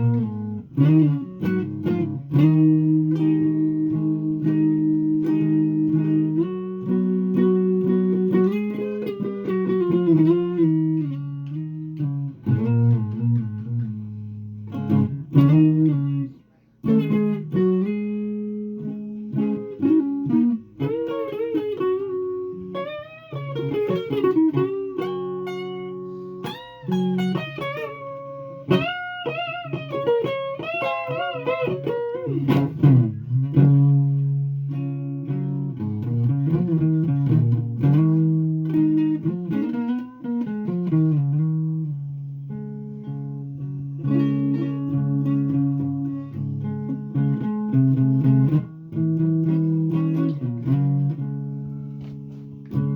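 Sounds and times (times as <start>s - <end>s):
solo guitar picking: 0.0s - 52.9s.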